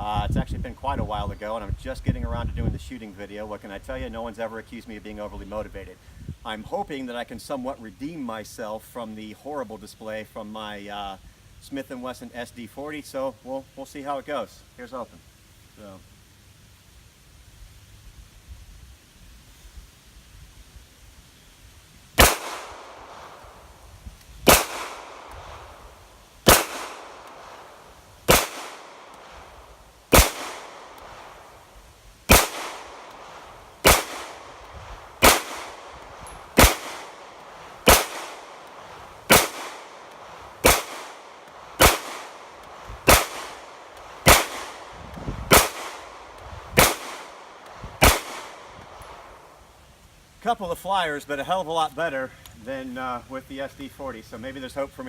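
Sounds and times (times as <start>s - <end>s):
pistol shots with echo: 22.2s - 23.4s, 24.5s - 25.8s, 26.5s - 29.4s, 30.1s - 31.3s, 32.3s - 44.9s, 45.5s - 48.8s.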